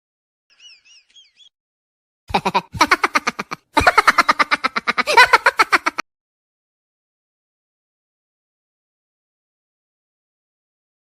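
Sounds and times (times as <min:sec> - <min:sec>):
person laughing: 0:02.3 - 0:06.0.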